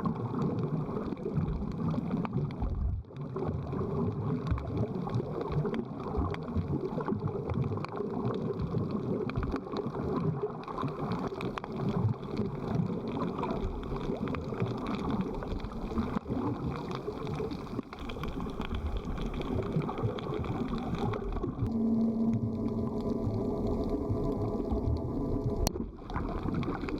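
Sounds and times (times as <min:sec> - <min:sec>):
rushing water: 0:00.0 - 0:26.9
low hum: 0:21.1 - 0:26.9.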